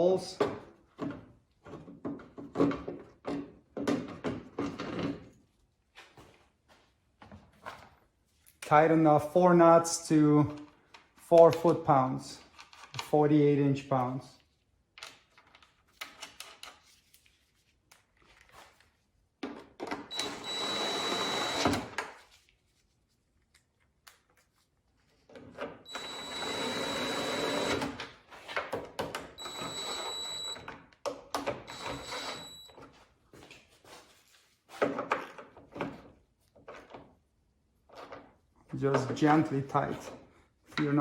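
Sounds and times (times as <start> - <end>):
power driver whining: 20.1 - 21.9, 25.9 - 28.0, 29.4 - 30.6, 31.5 - 32.7.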